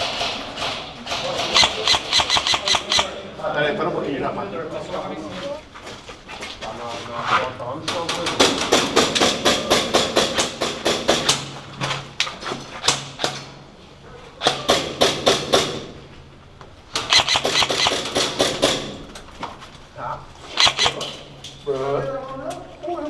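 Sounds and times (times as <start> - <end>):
airsoft guns firing bursts: 0.0 - 3.3, 17.0 - 19.0, 20.5 - 21.2.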